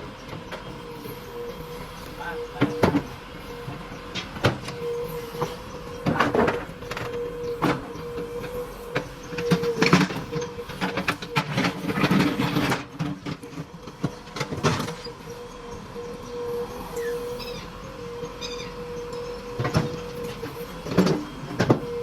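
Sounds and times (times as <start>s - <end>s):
backhoe loader whine: 0.0s - 22.0s
knocks and clanks: 19.6s - 22.0s.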